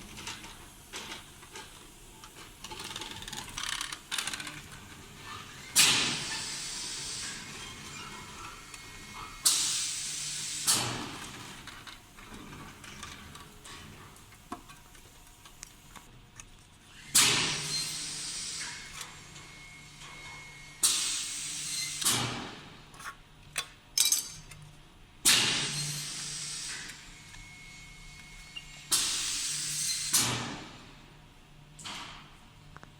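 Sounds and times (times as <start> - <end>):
hiss: 5.4 - 7.6, 9.4 - 11.2, 17.2 - 19.0, 20.8 - 22.3, 25.4 - 27.1, 28.9 - 30.5.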